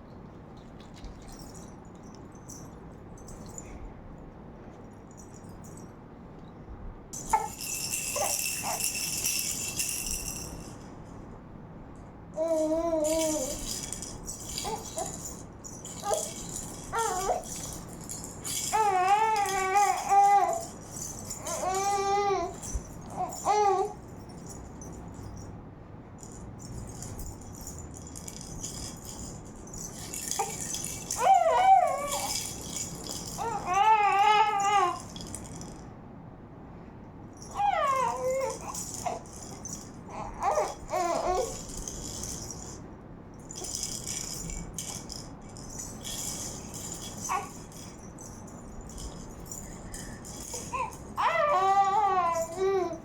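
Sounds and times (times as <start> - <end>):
toy rattle shaking: 0.6 - 3.8, 5.0 - 5.9, 7.1 - 11.2, 12.4 - 25.5, 26.2 - 35.9, 37.4 - 53.0
baby squealing and babbling: 7.3 - 8.9, 12.4 - 13.7, 14.5 - 15.2, 16.0 - 17.7, 18.4 - 24.0, 30.4 - 32.6, 33.4 - 35.1, 37.5 - 39.3, 40.1 - 41.7, 47.2 - 47.7, 50.4 - 53.0.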